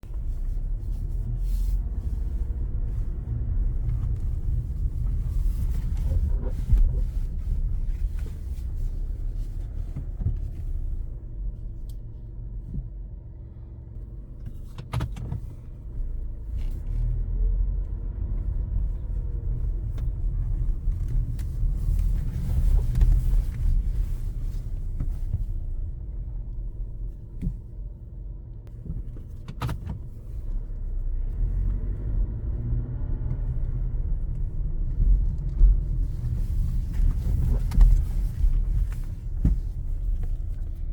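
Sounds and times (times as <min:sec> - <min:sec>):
car engine rumble: 0:00.0 - 0:40.9
vehicle squeaks and clicks: 0:03.9 - 0:10.8, 0:14.4 - 0:17.1, 0:28.7 - 0:30.7.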